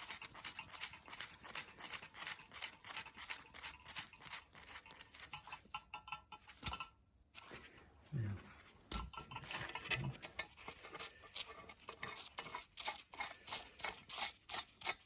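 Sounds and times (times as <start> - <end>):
hand tool rasping on metal: 0.0 - 5.9, 9.3 - 15.0.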